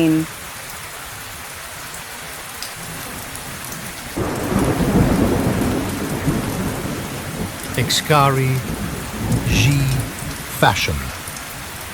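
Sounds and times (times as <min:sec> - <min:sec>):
steady rain falling: 0:00.0 - 0:11.9
low rumble of thunder: 0:04.2 - 0:07.8.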